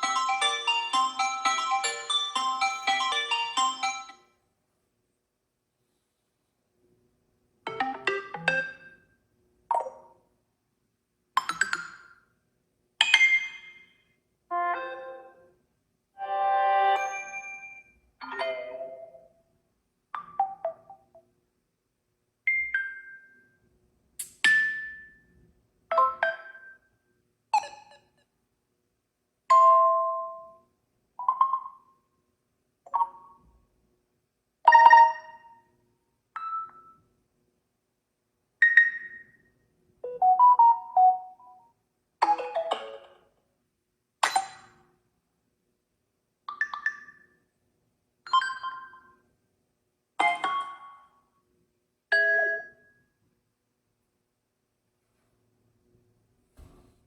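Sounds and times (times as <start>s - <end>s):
phone notification chimes: 1.3s - 4.1s.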